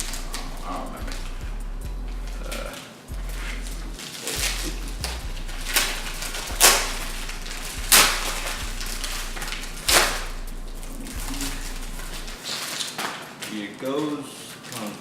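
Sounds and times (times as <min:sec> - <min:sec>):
low hum: 0:00.0 - 0:12.4
packaging ripping: 0:03.7 - 0:10.3, 0:11.3 - 0:15.0.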